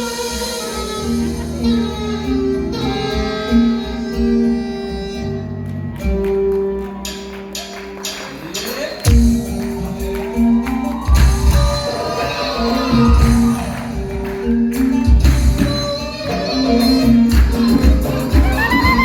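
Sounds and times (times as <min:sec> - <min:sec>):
hand percussion: 0:06.0 - 0:19.0
bagpipe melody: 0:15.1 - 0:19.0.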